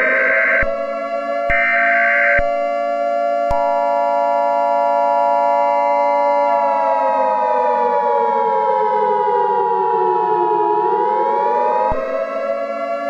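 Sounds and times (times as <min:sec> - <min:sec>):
civil defense siren wailing: 0:00.0 - 0:13.0.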